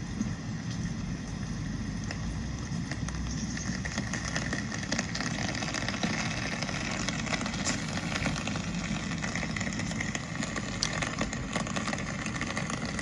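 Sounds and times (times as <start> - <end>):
low rumble: 0.0 - 13.0
rain falling: 3.2 - 13.0.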